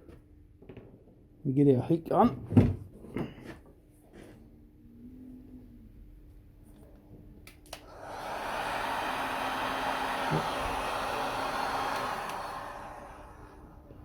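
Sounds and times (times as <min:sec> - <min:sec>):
heat gun blowing air: 0:07.8 - 0:14.0
heat gun switch click: 0:11.9 - 0:12.5.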